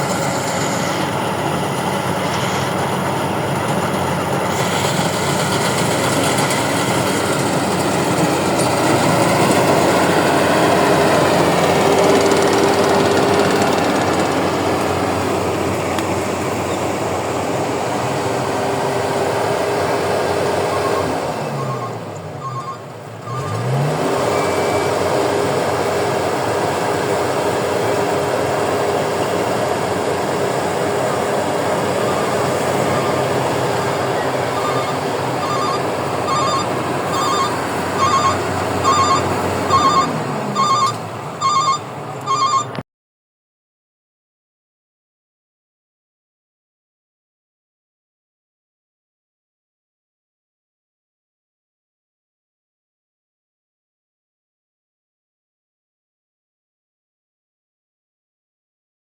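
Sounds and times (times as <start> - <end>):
combine harvester running: 0.0 - 42.8
electronic trilling ring: 21.6 - 23.6, 33.9 - 42.8.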